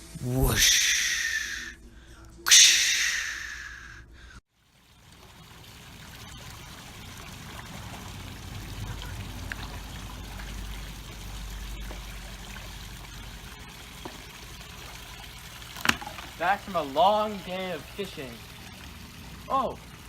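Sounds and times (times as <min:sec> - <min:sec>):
running water rushing: 0:04.6 - 0:20.0.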